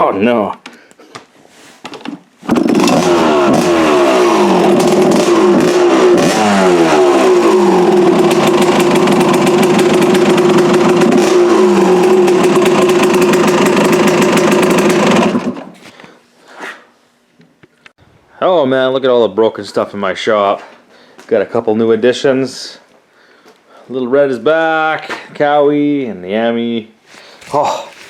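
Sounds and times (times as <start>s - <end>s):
small engine revving and idling: 2.4s - 15.8s
man speaking: 23.9s - 26.9s, 27.5s - 28.0s.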